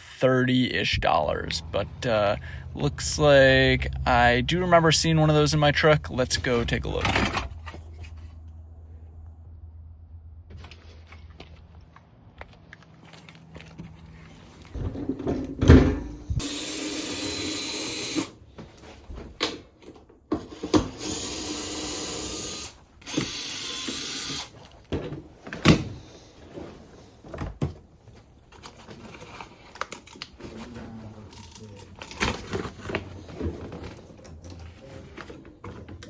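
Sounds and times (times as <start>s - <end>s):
cordless drill running: 16.4s - 18.4s, 20.6s - 24.6s.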